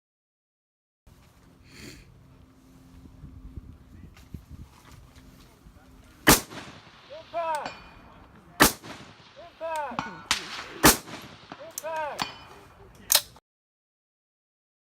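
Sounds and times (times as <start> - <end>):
rifle shots: 6.2 - 12.5
steel target ringing: 6.6 - 12.6.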